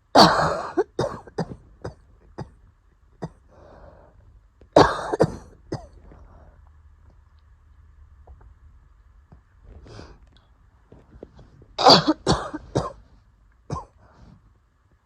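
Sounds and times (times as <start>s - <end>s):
person coughing: 0.2s - 2.6s, 4.8s - 6.0s, 11.8s - 13.0s, 13.7s - 14.0s.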